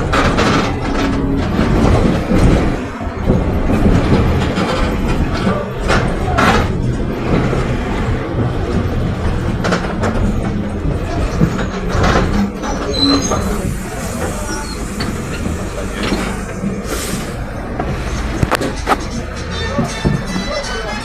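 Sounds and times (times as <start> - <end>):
bus engine drone: 0.0 - 21.0
brief squeak: 12.7 - 13.6.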